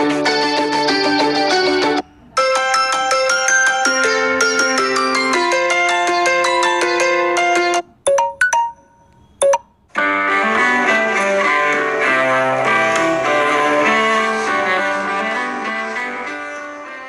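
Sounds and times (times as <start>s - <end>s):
plucked-string ringtone melody: 0.2s - 13.8s
chiming ringtone melody: 1.3s - 9.7s.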